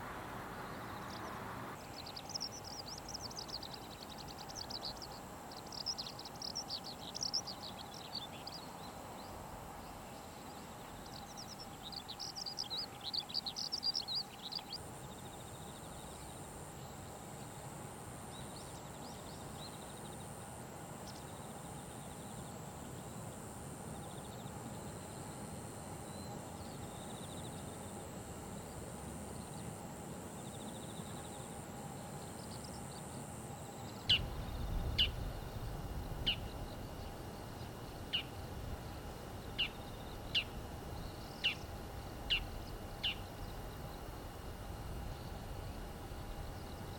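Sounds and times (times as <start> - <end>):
outdoor background noise: 0.0 - 46.9
songbird twittering chirps: 0.6 - 17.1, 33.8 - 44.2.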